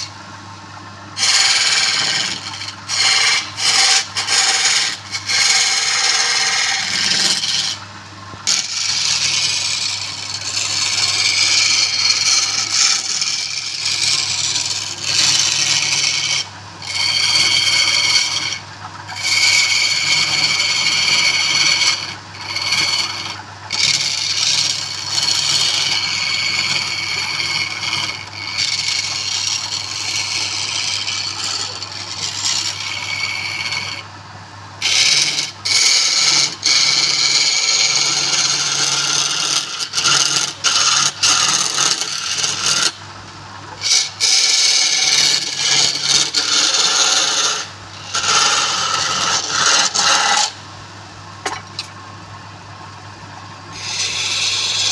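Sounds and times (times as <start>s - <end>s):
tool scraping wood: 0.0s - 0.2s, 1.2s - 7.8s, 8.4s - 34.1s, 34.8s - 43.0s, 43.6s - 50.6s, 51.4s - 51.9s, 53.7s - 54.9s.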